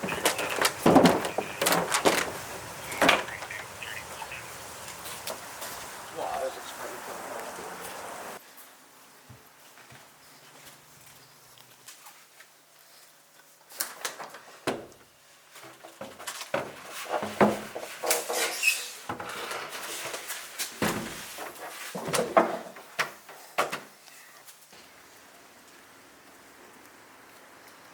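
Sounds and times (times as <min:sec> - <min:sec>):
objects knocking and clattering: 0:00.0 - 0:03.5, 0:15.6 - 0:18.5, 0:19.1 - 0:23.9.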